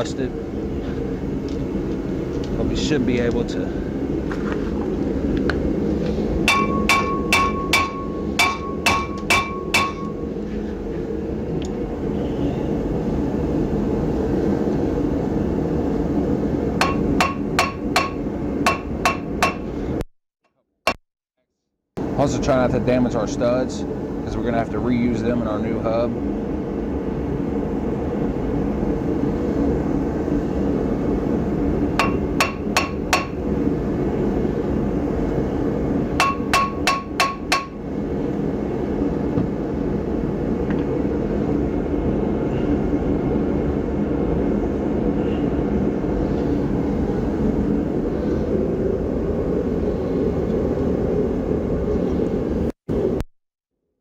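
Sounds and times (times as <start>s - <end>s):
low rumble: 0.0s - 20.0s, 37.8s - 53.2s
hammer striking metal: 6.4s - 10.2s, 16.8s - 19.7s, 32.0s - 33.4s, 36.2s - 37.8s.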